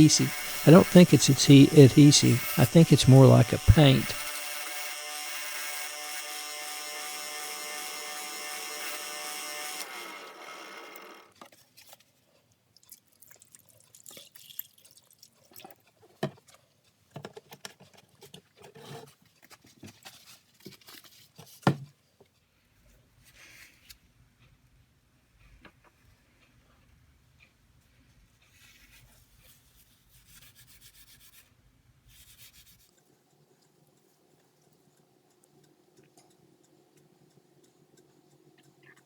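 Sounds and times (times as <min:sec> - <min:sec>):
power tool whining: 0:00.0 - 0:11.4
faint clicks and light taps: 0:32.9 - 0:39.0.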